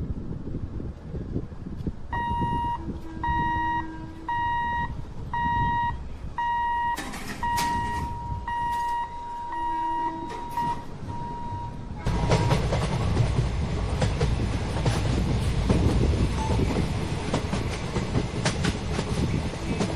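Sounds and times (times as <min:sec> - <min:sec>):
low rumble of traffic: 0:00.0 - 0:19.9
high-pitched warning beeps: 0:02.1 - 0:11.8.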